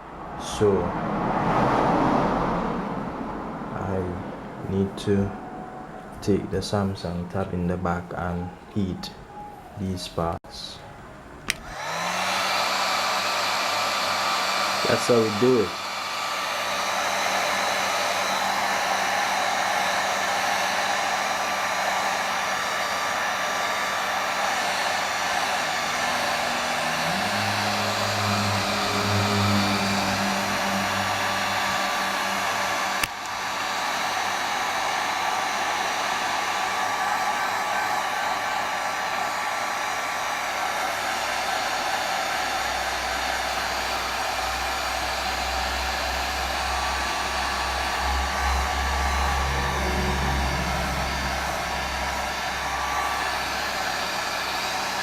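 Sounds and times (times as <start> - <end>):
heat gun blowing: 11.5 - 55.0.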